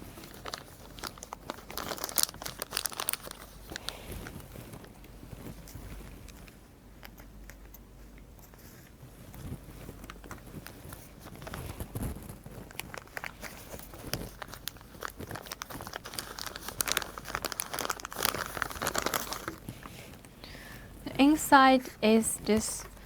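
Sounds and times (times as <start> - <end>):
plastic packaging crinkling: 0.0 - 6.4, 10.1 - 20.4.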